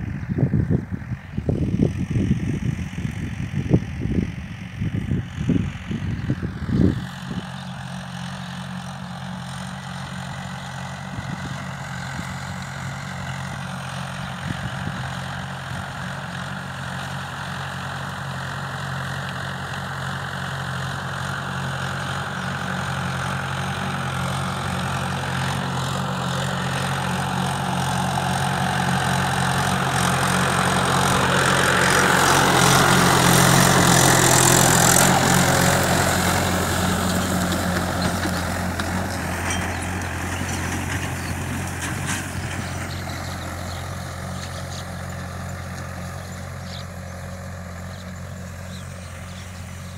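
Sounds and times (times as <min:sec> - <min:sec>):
wind buffeting microphone: 0:00.0 - 0:07.6, 0:14.4 - 0:15.3
tractor engine running: 0:00.0 - 0:49.9.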